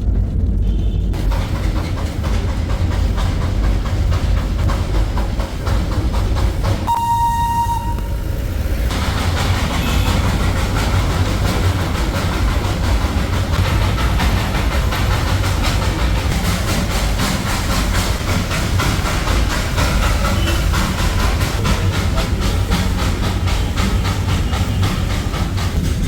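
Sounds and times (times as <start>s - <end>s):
train rumble with rattling clatter: 0.0s - 26.0s
steam whistle blast: 6.9s - 8.3s.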